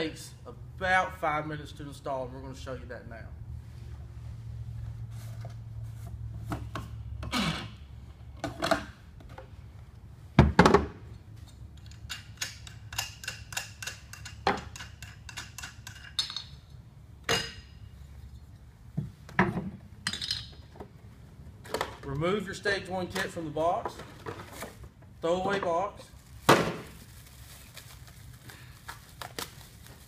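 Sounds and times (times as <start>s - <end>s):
objects knocking and thudding: 10.4s - 11.0s, 18.9s - 21.0s, 26.4s - 27.0s.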